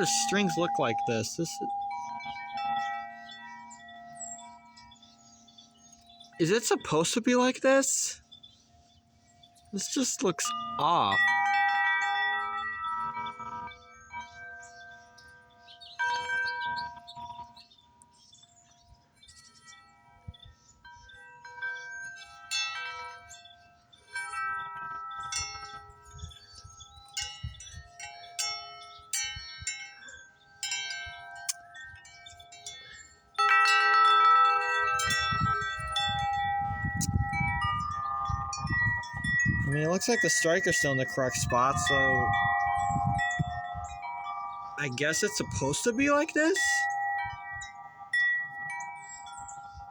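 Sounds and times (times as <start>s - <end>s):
wind chime tones: 0.0s - 49.9s
wind rumbling on microphone: 25.2s - 28.0s, 34.9s - 46.0s, 46.8s - 49.9s.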